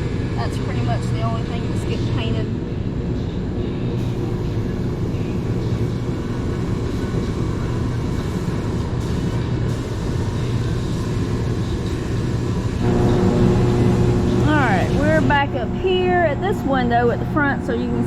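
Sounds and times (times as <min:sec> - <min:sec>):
machinery humming: 0:00.0 - 0:18.0.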